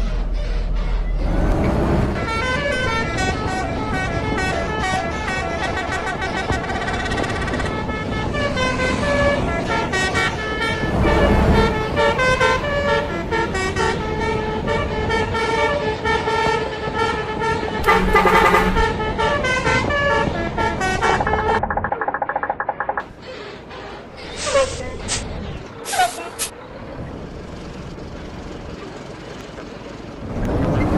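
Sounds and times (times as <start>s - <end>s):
multi-tone bus horn tune: 0.0s - 21.6s.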